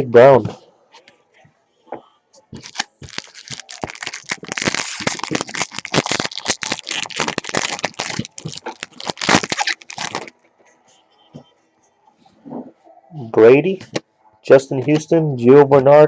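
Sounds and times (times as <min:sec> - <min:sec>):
foil wrapper tearing and crinkling: 0:02.6 - 0:10.3.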